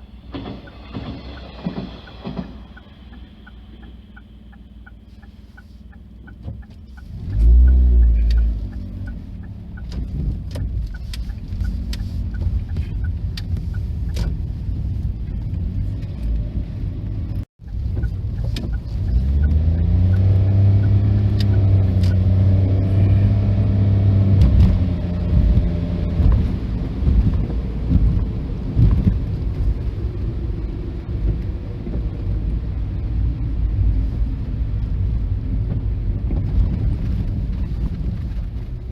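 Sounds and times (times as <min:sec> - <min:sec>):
diesel train engine drone: 0:00.0 - 0:10.0, 0:15.0 - 0:28.8.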